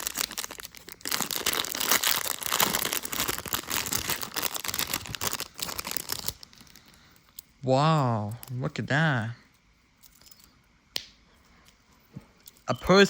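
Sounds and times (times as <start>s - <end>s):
plastic packaging crinkling and tearing: 0.0s - 7.1s.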